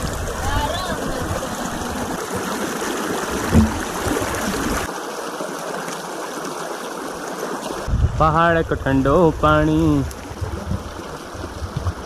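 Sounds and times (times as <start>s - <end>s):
stream water rushing over rocks: 0.0s - 12.0s
low thump: 3.4s - 4.4s.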